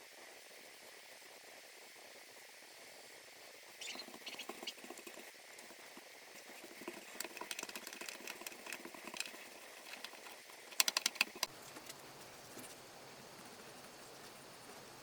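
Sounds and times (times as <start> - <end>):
sharp clicks: 7.0 - 12.0.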